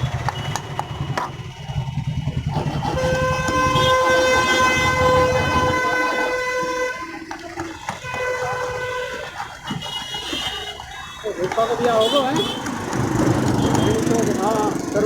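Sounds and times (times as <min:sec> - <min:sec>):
engine running: 0:00.0 - 0:05.7, 0:12.7 - 0:15.0
vehicle horn blowing: 0:02.6 - 0:07.2, 0:07.8 - 0:12.6.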